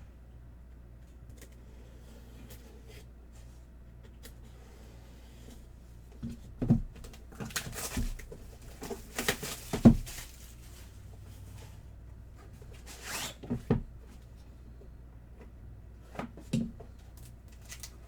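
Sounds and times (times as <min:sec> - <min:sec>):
wrapper or cardboard rustling: 0:07.4 - 0:11.0
light knocks and thuds: 0:09.6 - 0:10.3.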